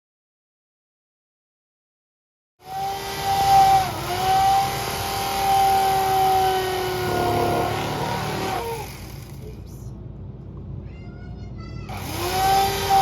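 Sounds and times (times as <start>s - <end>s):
motor whining: 2.6s - 9.5s, 11.9s - 13.0s.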